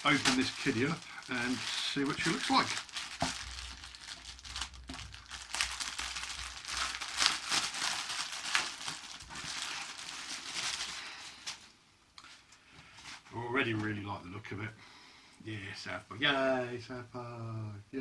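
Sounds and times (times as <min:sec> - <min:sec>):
plastic packaging crinkling: 0:00.0 - 0:11.7.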